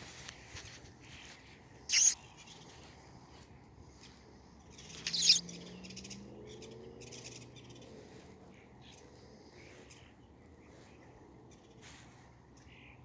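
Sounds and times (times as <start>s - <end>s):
woodcock harsh peent call: 1.9s - 2.2s, 5.1s - 5.4s.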